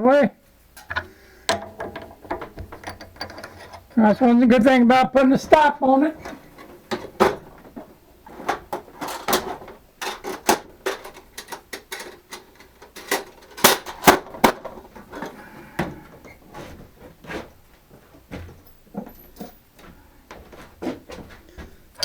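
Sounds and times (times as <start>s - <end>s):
tools knocking on workbench: 0.8s - 3.8s.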